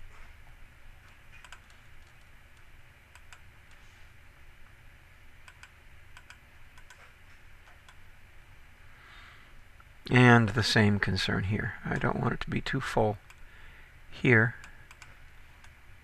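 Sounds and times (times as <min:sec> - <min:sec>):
steady low hum: 0:00.0 - 0:16.0
mouse and keyboard clicking: 0:01.1 - 0:03.8, 0:05.4 - 0:08.0, 0:14.6 - 0:15.8.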